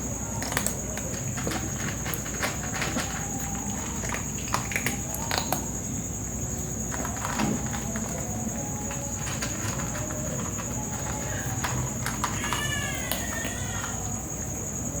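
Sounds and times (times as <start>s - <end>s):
cats chewing and crunching: 0.0s - 15.0s.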